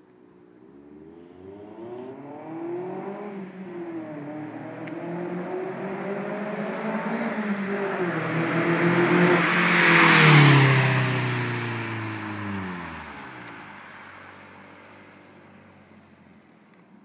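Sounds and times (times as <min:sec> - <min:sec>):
four-cylinder car engine revving: 0:00.6 - 0:13.6.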